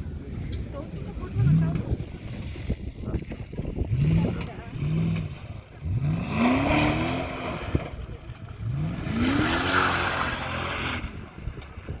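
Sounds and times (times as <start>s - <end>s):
car engine revving hard: 3.9s - 11.2s.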